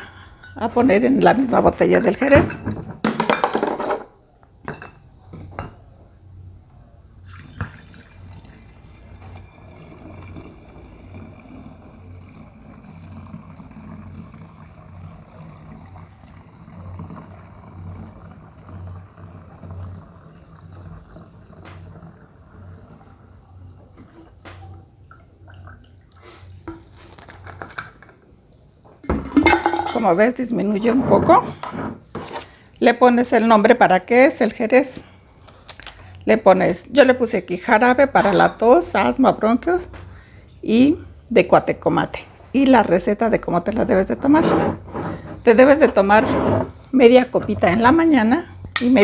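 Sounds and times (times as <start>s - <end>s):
liquid trickling into a bottle: 7.2s - 28.0s.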